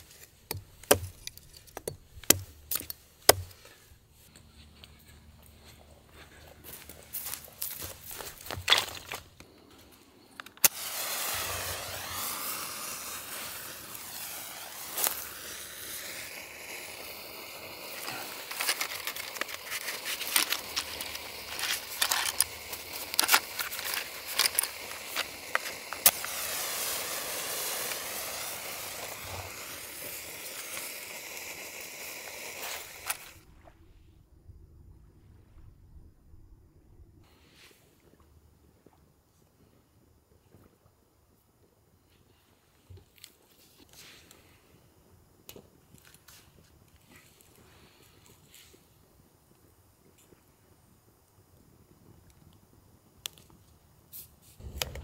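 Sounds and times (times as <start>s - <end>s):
pops and crackles: 7.2s - 33.5s, 51.2s - 55.0s
food sizzling in a pan: 10.6s - 33.4s.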